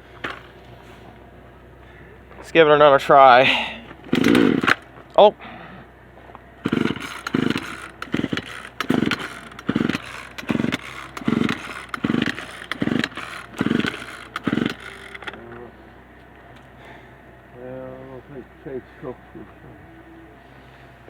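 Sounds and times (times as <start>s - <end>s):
chainsaw recoil starter pulls: 0.2s - 0.6s, 3.2s - 5.3s, 6.6s - 15.6s.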